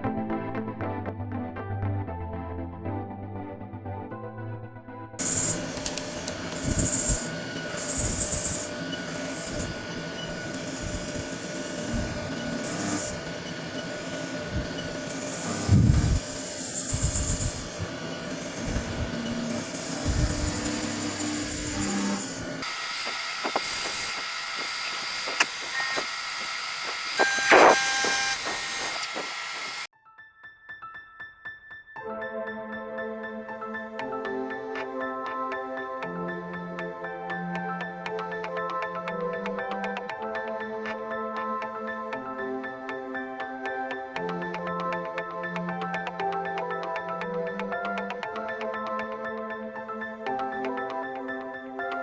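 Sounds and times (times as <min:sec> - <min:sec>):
high-pitched cutting squeal: 0:05.2 - 0:29.9
milling machine running: 0:05.2 - 0:29.9
clicks: 0:22.6 - 0:29.9.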